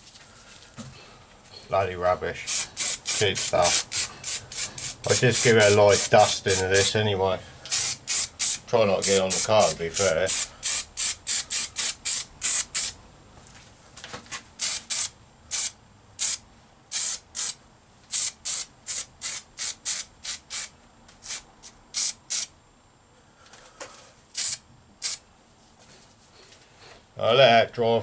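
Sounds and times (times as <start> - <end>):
aerosol spray hissing bursts: 2.5 - 7.0, 7.7 - 13.0, 14.6 - 22.5, 24.4 - 25.2.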